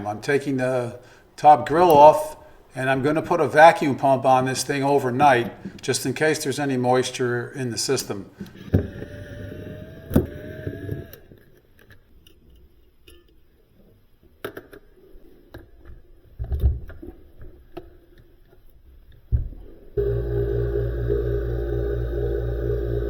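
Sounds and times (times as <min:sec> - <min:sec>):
steady low hum: 0:20.0 - 0:23.0.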